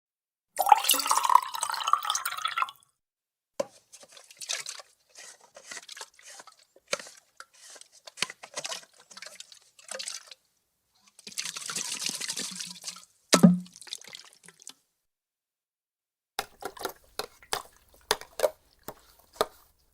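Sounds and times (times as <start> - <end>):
sharp knock: 13.4 - 13.7.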